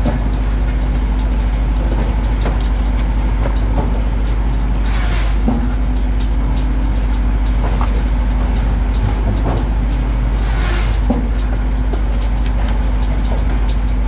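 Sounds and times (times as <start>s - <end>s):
light ticking: 0.0s - 14.0s
machine engine humming: 0.0s - 14.0s
short hiss: 4.8s - 5.5s, 10.4s - 11.1s.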